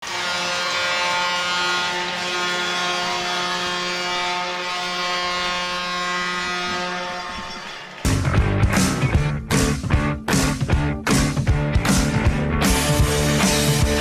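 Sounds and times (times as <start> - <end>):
goal horn blast: 0.0 - 8.3.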